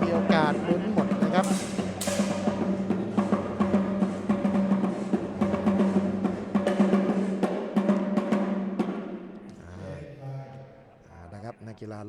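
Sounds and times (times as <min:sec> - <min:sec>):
rapid drumming: 0:00.0 - 0:09.5.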